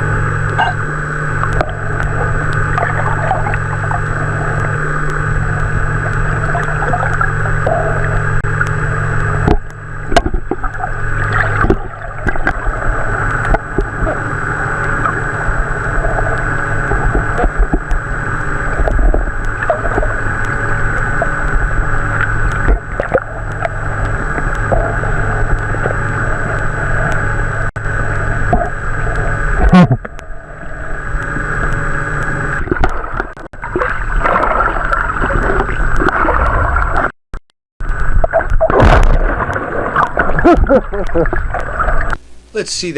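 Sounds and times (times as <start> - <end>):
underwater hum and rumble: 0.0 - 37.2, 37.8 - 42.9
manatee sneeze underwater: 0.5 - 0.9.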